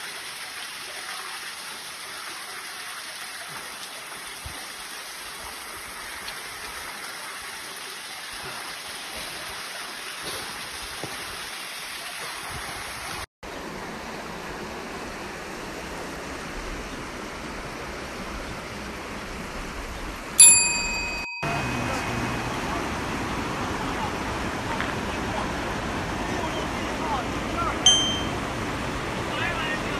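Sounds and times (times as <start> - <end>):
bell-like ding: 20.4 - 22.3, 27.8 - 28.4
waterfall rushing: 21.4 - 29.9.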